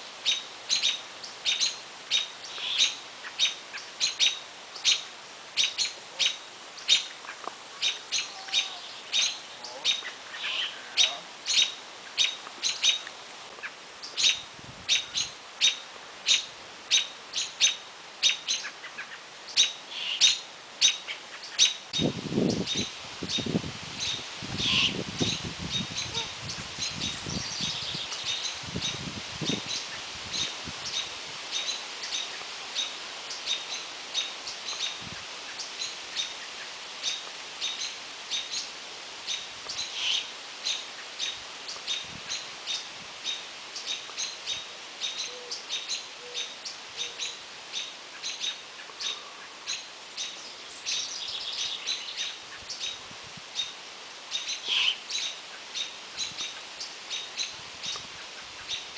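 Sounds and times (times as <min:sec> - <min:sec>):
bird chirping: 0:43.8 - 0:53.0.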